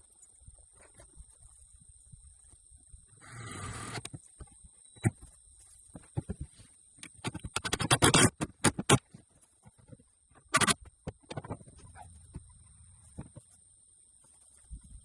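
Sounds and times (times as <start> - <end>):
sharp clicks and knocks: 7.0 - 12.5.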